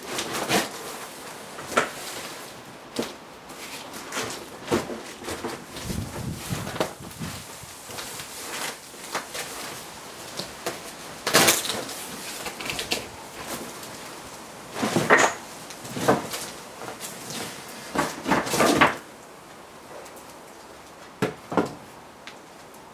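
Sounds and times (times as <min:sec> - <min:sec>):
knocks and clatter of parts: 0:14.7 - 0:19.0.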